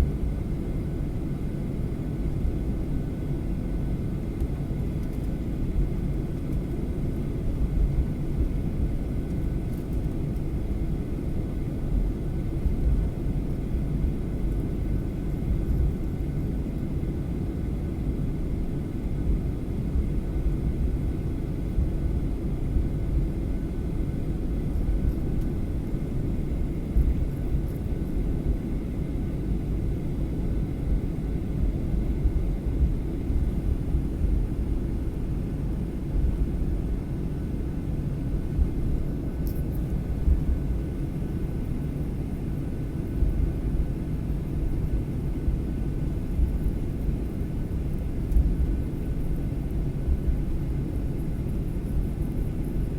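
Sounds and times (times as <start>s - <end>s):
airliner cabin rumble: 19.2s - 52.9s.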